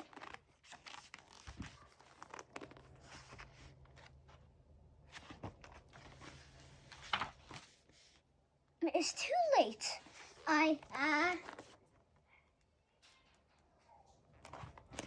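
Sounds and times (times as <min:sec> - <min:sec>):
paper pages rustling and turning: 0:00.0 - 0:08.3, 0:10.0 - 0:12.2, 0:14.2 - 0:15.0.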